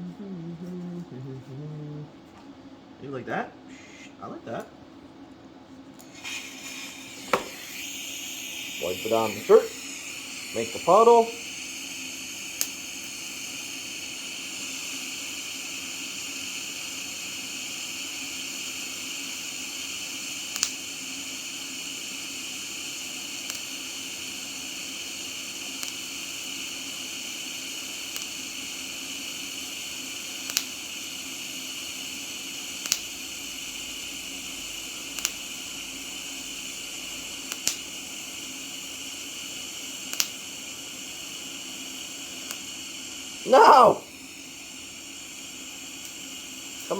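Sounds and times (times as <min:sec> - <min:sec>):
welding arc hissing: 0:06.0 - 0:46.9
sharp clicks: 0:32.8 - 0:33.1, 0:35.2 - 0:35.4, 0:37.4 - 0:37.9, 0:40.1 - 0:40.4.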